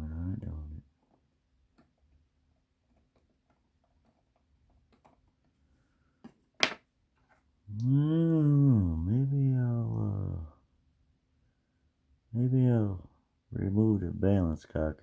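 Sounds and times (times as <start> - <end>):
person humming: 7.7 - 10.6.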